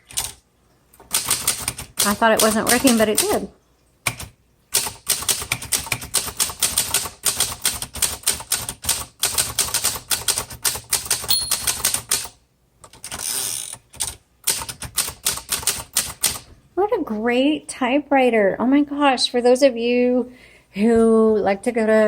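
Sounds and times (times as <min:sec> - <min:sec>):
typewriter bell ringing: 0:11.3 - 0:12.0.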